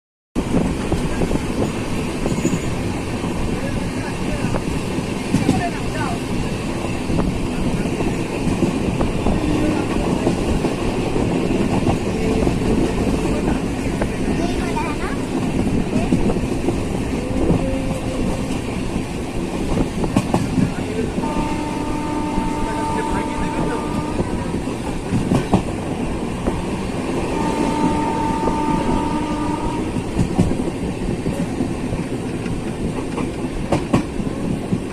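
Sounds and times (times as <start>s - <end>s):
moving vehicle rumbling: 0.4s - 34.9s.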